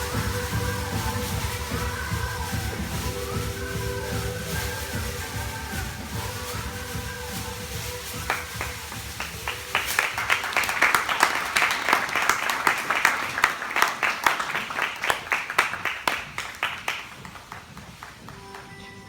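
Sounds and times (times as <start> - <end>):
audience applauding: 6.9 - 18.9.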